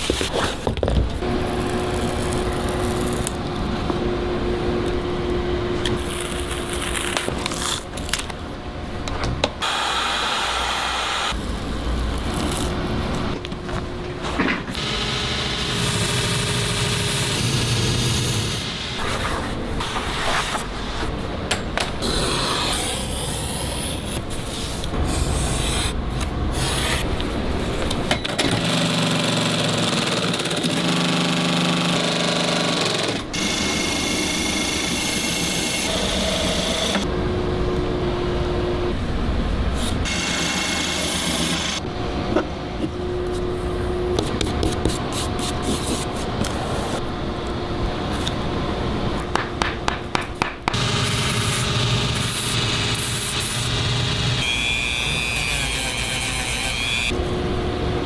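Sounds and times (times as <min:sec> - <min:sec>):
machine running: 0:14.7 - 0:19.1, 0:25.2 - 0:42.3, 0:50.7 - 0:55.3.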